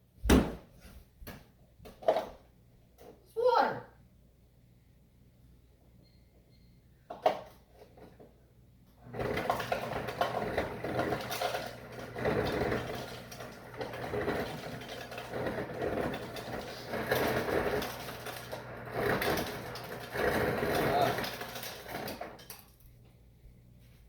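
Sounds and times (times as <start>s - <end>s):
electric dispenser hum: 9.0s - 22.6s
liquid pouring and rattling: 9.2s - 22.8s.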